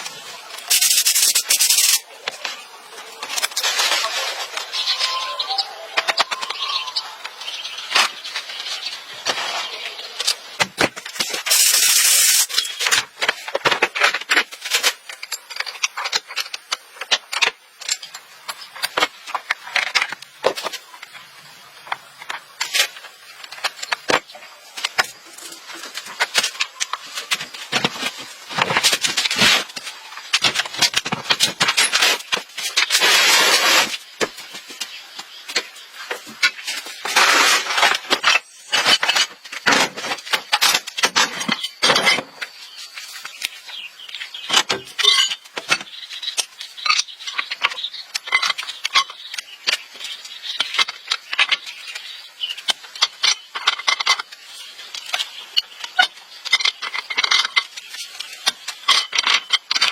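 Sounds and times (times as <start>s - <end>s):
burst of hiss: 11.5s - 12.5s
metal tools clattering: 44.5s - 49.2s, 55.0s - 59.9s.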